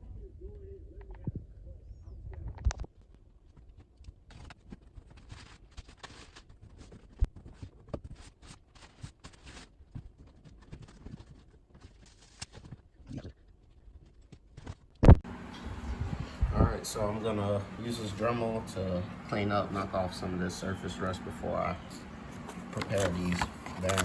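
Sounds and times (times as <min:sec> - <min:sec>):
packaging rustling and crinkling: 0:03.5 - 0:15.0, 0:22.3 - 0:24.0.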